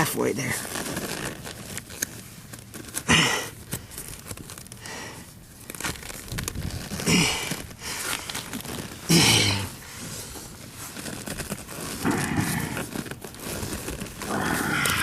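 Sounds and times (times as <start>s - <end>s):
leather rustling and crinkling: 0.0s - 15.0s
person grunting: 9.1s - 9.8s, 14.2s - 15.0s.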